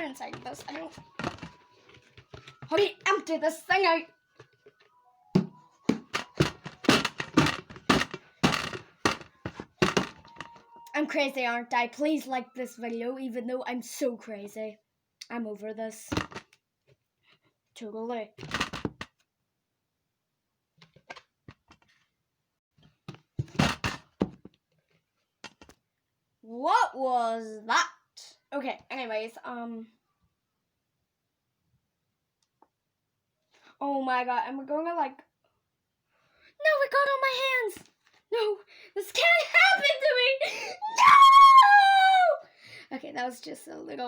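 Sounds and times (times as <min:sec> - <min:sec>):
handling clicks and knocks: 0:00.2 - 0:02.9, 0:04.4 - 0:10.7.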